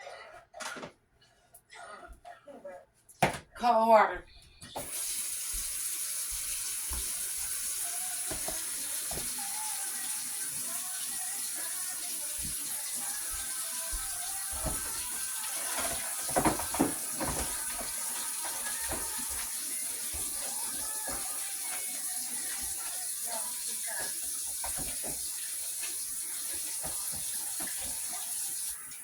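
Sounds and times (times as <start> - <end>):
tap water running into sink: 4.8 - 29.0
knocks and clatters: 14.6 - 19.5.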